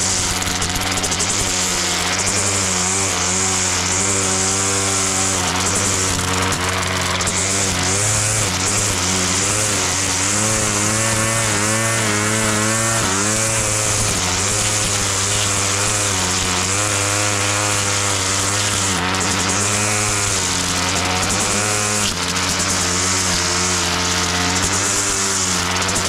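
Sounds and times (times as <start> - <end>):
lawn mower engine running: 0.0 - 26.0.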